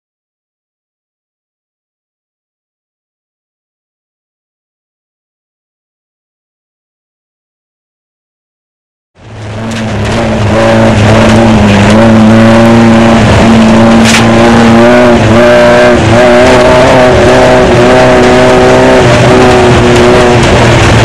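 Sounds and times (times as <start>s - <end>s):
race car engine running: 9.2s - 21.0s
sharp click: 14.0s - 14.3s.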